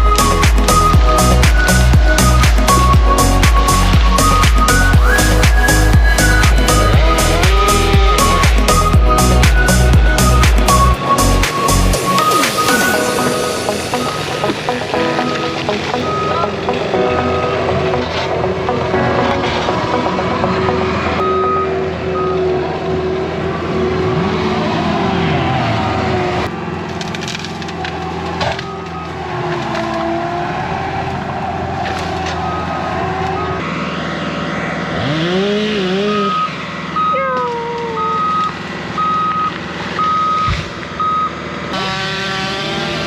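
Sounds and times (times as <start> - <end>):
reversing alarm beeping: 0.0 - 23.2, 36.3 - 37.4, 38.0 - 41.4
diesel engine running: 0.0 - 29.2
wood cracking and splintering: 26.5 - 30.6.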